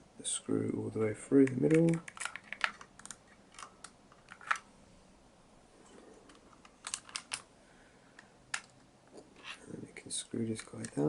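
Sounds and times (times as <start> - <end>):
clicks of small model parts: 1.4 - 4.6, 10.5 - 11.0.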